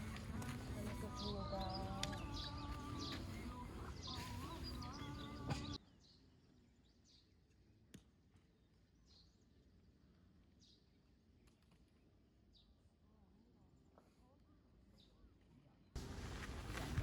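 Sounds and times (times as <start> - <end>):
bird chirps: 0.0 - 7.3.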